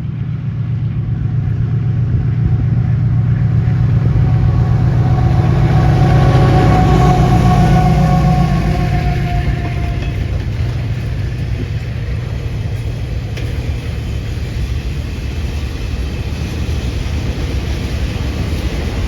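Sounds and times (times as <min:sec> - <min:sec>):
train wagons rumbling on rails: 0:00.0 - 0:19.0
diesel engine tone: 0:01.0 - 0:11.6.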